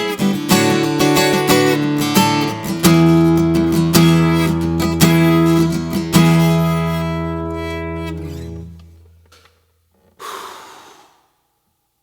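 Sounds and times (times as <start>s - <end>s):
acoustic guitar chord ringing: 0.0s - 9.3s.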